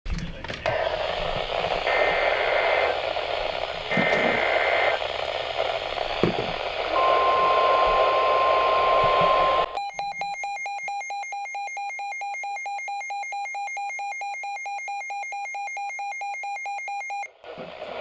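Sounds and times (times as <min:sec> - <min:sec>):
radio static: 0:00.2 - 0:09.8, 0:17.4 - 0:18.0
steady warning alarm tone: 0:05.7 - 0:17.3.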